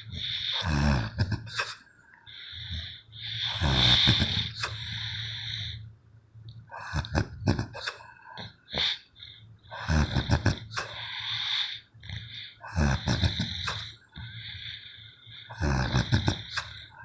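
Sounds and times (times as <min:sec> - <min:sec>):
person snoring heavily: 0:00.0 - 0:01.8, 0:02.6 - 0:05.6, 0:09.7 - 0:14.0, 0:14.6 - 0:17.0.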